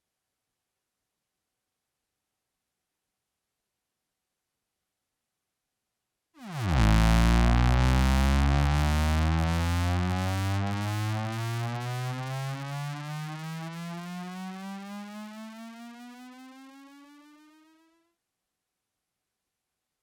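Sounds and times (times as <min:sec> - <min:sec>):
synthesized swooping buzzy tone: 0:06.4 - 0:17.7.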